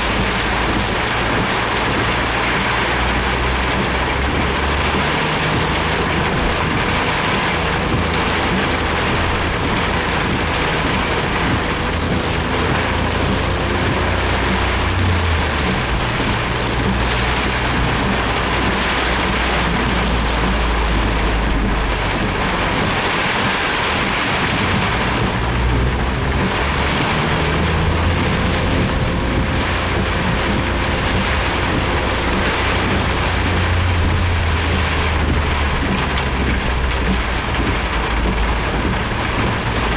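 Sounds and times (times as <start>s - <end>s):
heavy rain on car roof: 0.0s - 39.9s
low engine and road rumble: 0.0s - 39.9s.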